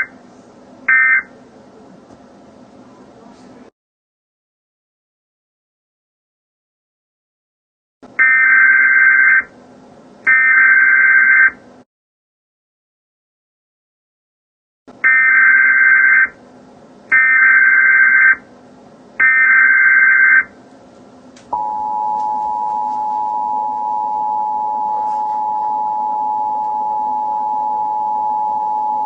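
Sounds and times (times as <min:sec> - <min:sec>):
two-tone attention signal: 0:21.6 - 0:29.0.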